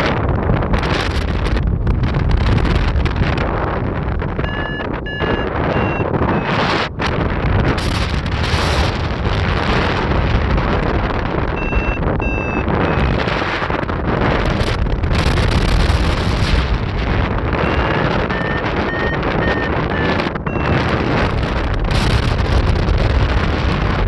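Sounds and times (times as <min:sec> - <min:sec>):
wind buffeting microphone: 0:00.0 - 0:24.0
short high electronic beeps: 0:04.4 - 0:06.6, 0:11.6 - 0:13.0, 0:17.6 - 0:20.9.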